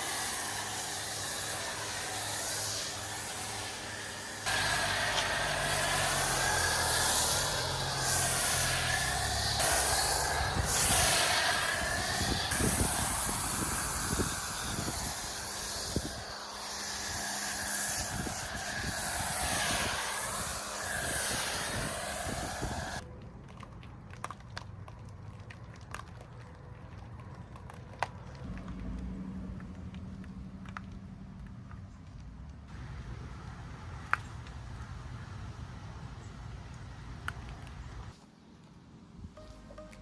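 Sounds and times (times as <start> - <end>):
water spray hissing on car: 0.0 - 23.0.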